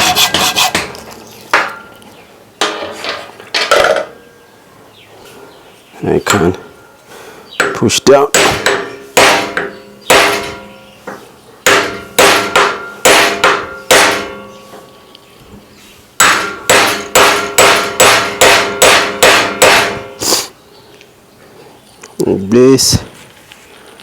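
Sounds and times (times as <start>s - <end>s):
hammer blows on metal: 7.6s - 14.9s, 16.2s - 20.4s.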